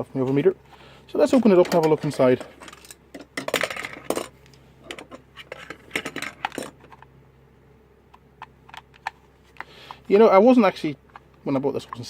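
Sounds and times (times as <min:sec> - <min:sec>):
plastic case clicks and clatters: 0:08.4 - 0:09.7.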